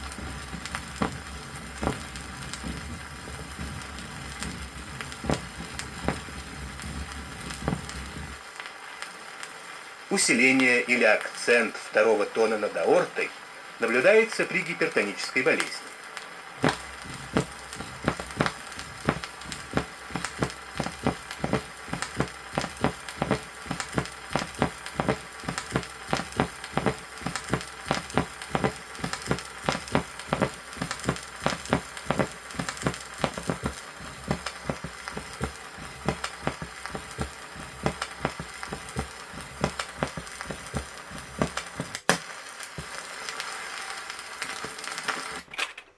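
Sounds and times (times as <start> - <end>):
heartbeats: 0.0 - 8.4, 16.6 - 42.0
vinyl crackle and hiss: 0.0 - 45.7.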